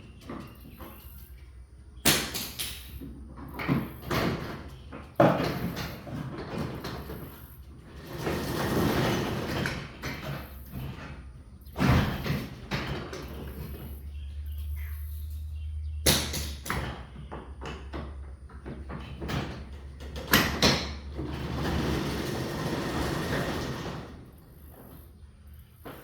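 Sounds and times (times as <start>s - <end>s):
garage door rattling in tracks: 2.0s - 14.5s, 16.0s - 26.0s
garage door motor hum: 3.8s - 15.7s, 18.1s - 26.0s.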